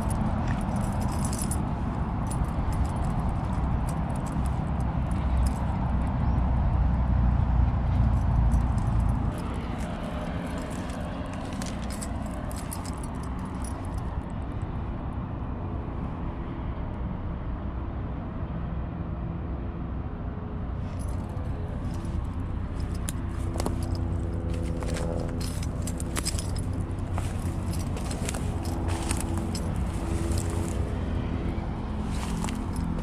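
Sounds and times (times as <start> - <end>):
light clicks and jingles: 0.0 - 6.4, 7.9 - 14.3, 20.9 - 33.0
road traffic rumble: 0.0 - 33.0.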